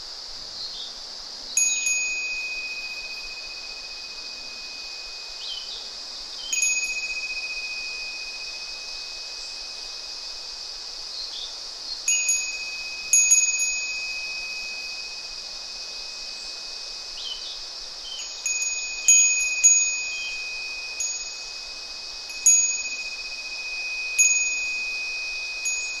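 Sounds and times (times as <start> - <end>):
steady high hiss: 0.0 - 26.0
wind bell ringing: 1.6 - 5.6, 6.5 - 10.0, 12.1 - 16.7, 18.2 - 26.0
faint bird chirps: 5.4 - 6.7.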